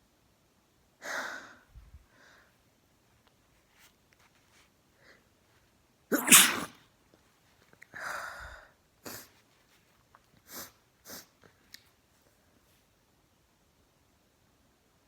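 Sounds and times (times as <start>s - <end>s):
person sneezing: 6.1s - 6.8s.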